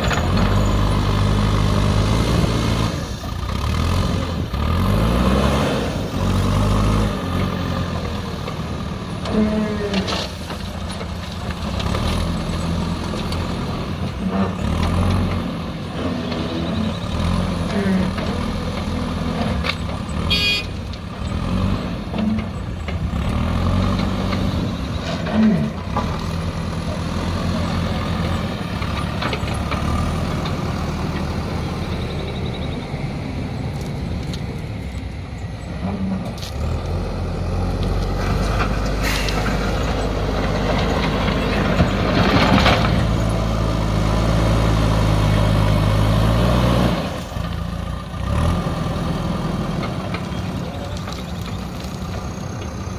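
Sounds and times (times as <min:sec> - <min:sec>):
diesel engine revving: 0:00.0 - 0:52.9.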